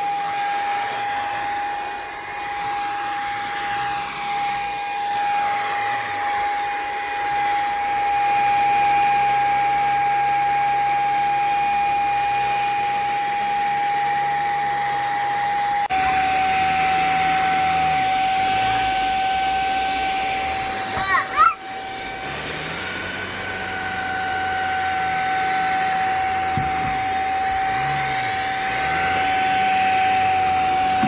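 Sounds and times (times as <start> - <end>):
vacuum motor whine: 0.0 - 31.0.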